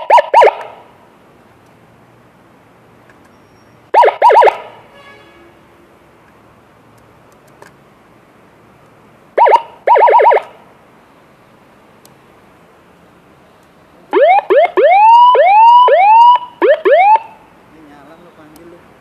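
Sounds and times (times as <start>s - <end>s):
electronic siren chirps: 3.9s - 4.7s, 9.4s - 10.5s, 14.2s - 17.4s.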